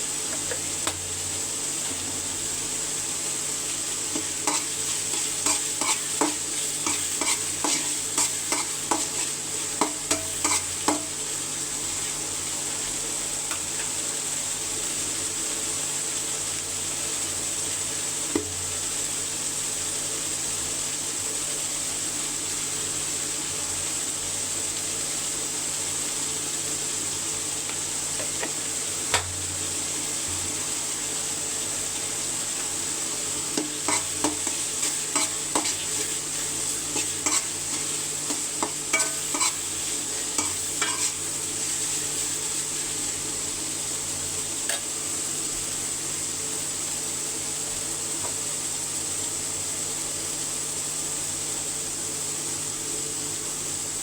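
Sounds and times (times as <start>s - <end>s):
food sizzling in hot oil: 0.0s - 54.0s
spoon knocking against pot: 9.8s - 11.1s, 38.6s - 39.5s.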